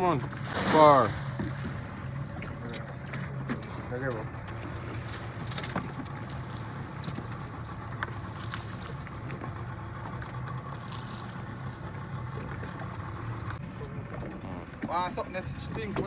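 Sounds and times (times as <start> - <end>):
boat motor droning: 0.0 - 16.0
wind: 0.0 - 16.0.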